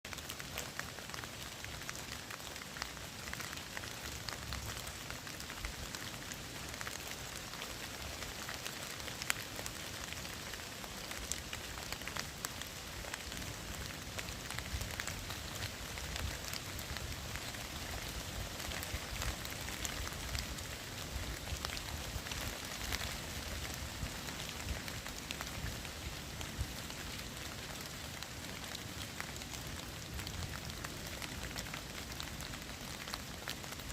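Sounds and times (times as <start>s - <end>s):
raindrops pattering on surfaces: 0.0s - 33.9s
rain hiss: 0.1s - 33.9s.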